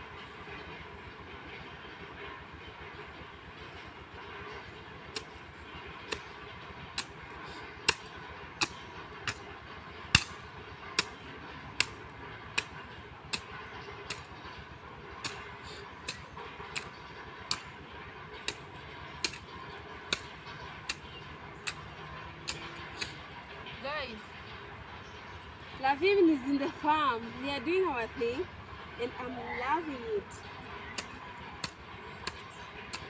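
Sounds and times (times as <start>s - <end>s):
hoe chopping into soil: 10.2s - 10.4s.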